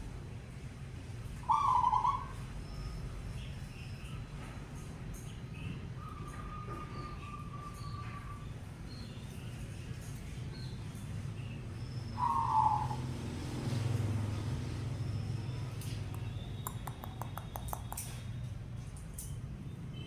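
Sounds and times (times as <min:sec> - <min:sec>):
dove cooing: 0:01.4 - 0:02.4, 0:12.2 - 0:13.2
sharp clicks: 0:15.8 - 0:18.4.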